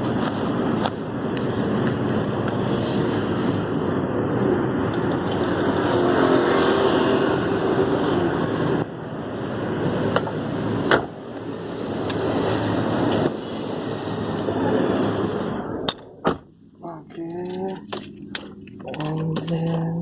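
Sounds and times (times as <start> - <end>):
car engine running: 0.0 - 20.0
sharp clicks: 4.9 - 6.1.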